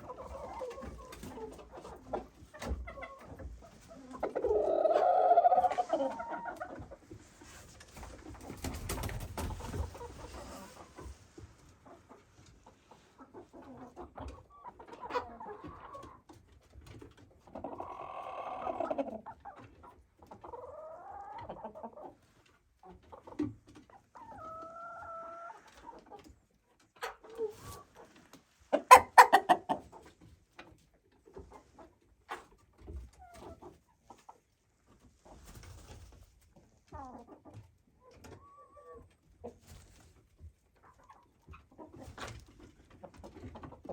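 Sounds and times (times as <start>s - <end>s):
chicken cackles: 0.0s - 7.0s, 12.9s - 16.3s, 17.5s - 22.2s, 24.0s - 26.2s, 27.0s - 30.2s, 38.0s - 39.6s
chickens clucking: 0.0s - 43.9s.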